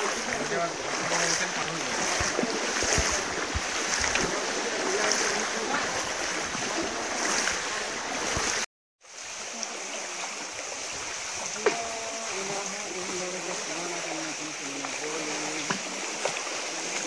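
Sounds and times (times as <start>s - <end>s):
running water: 0.0s - 17.0s.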